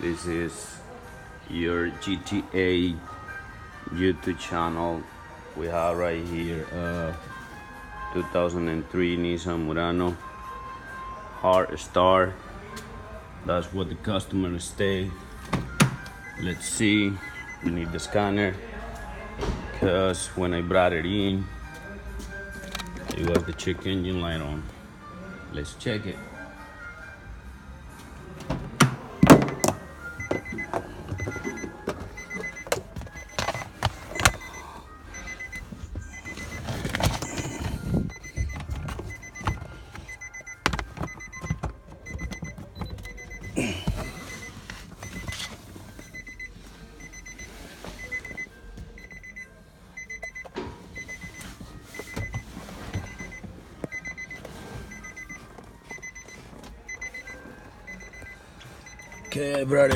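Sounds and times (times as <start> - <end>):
car warning chime beeping: 13.6 - 24.7, 25.4 - 59.9.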